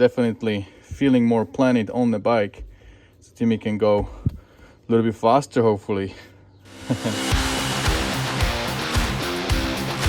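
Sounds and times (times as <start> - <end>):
strummed guitar music with beat: 6.7 - 10.0.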